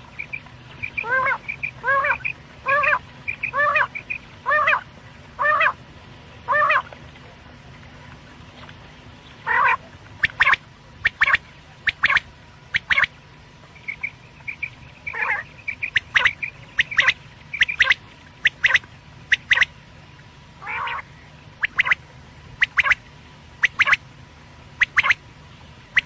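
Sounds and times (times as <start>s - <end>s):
soft chirps: 0.0s - 2.4s, 3.2s - 4.3s, 10.2s - 19.8s, 23.6s - 24.0s, 24.8s - 25.2s
quail calling: 0.0s - 5.8s, 6.5s - 6.9s, 9.4s - 13.1s, 13.8s - 19.7s, 20.6s - 22.0s, 22.6s - 23.0s, 23.6s - 24.0s, 24.8s - 25.2s.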